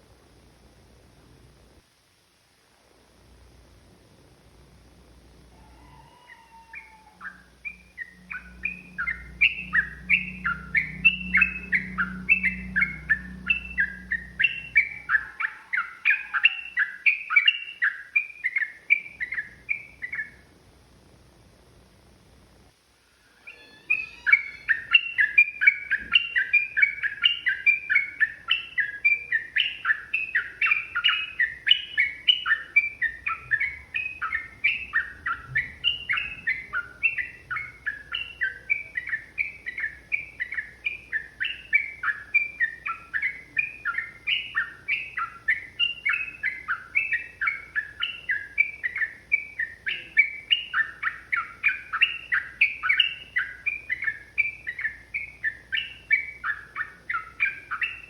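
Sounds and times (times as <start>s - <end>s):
bulbul singing chirpy notes: 5.6s - 20.5s, 23.3s - 58.0s
low hum: 6.7s - 17.0s.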